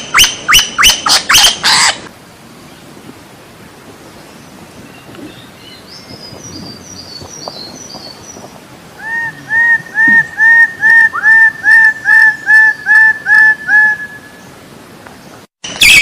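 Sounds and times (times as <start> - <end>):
faint high bird twittering: 4.1 - 11.2
loud whistled bird notes: 15.8 - 16.0.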